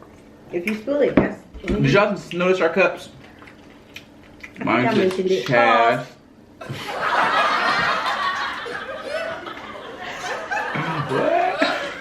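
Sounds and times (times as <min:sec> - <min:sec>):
people laughing: 0:06.6 - 0:12.0.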